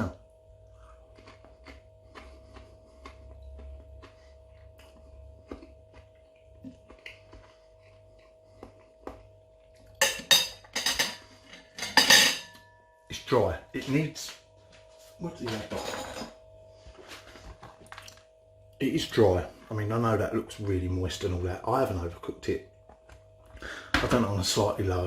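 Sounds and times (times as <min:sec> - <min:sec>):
steady low hum: 0:00.0 - 0:25.0
cutlery clinking on a plate: 0:10.0 - 0:12.7.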